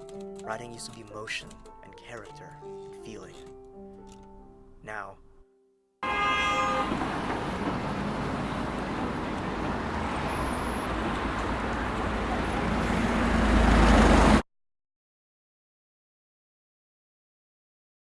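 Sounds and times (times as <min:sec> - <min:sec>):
passing road traffic: 0:06.0 - 0:14.4
vehicle passing close rumble: 0:06.2 - 0:14.4.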